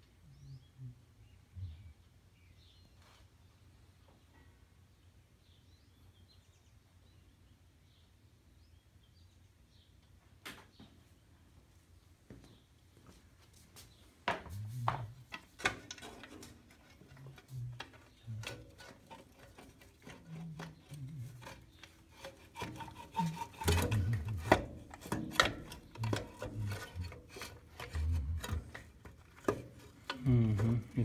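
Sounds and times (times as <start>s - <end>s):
hand tools on metal parts: 14.3s - 31.0s.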